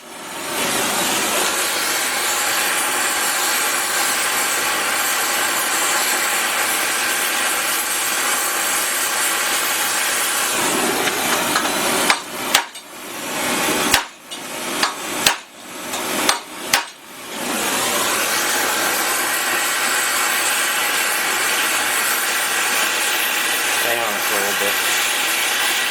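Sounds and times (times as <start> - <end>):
torch hissing: 0.0 - 25.9
hammer striking hot rivet: 11.0 - 12.9, 13.9 - 17.0.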